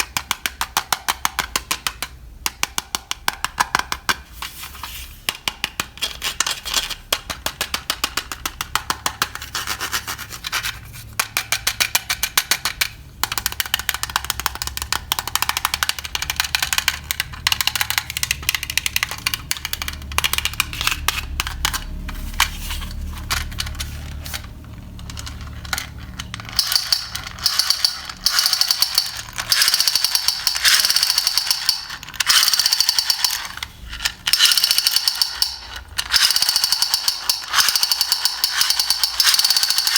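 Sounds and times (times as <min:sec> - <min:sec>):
electric toy gun rattling clicks: 0:11.2 - 0:22.1, 0:23.2 - 0:39.9.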